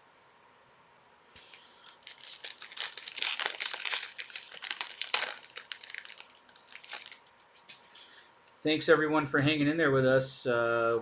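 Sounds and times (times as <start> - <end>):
card pack wrapper tearing and crinkling: 1.4 - 7.7.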